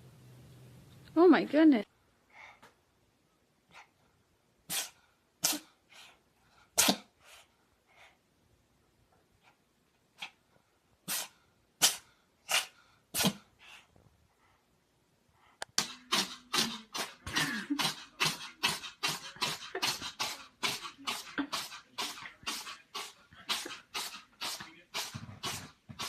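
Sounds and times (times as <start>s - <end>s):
cat sneezing: 4.6s - 5.8s, 6.8s - 7.1s, 11.0s - 13.5s, 15.8s - 25.8s.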